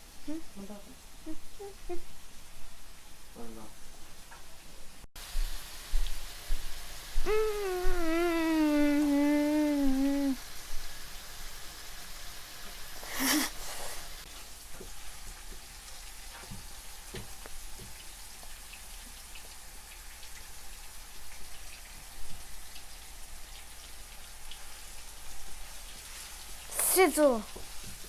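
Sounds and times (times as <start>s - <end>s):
oil sizzling in a frying pan: 0.0s - 28.0s.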